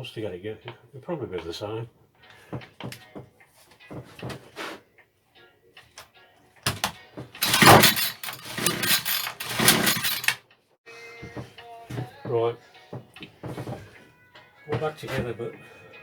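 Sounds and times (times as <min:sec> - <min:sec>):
engine turning over with a rasp: 0:06.7 - 0:10.4
recoil starter pulls: 0:06.7 - 0:10.4.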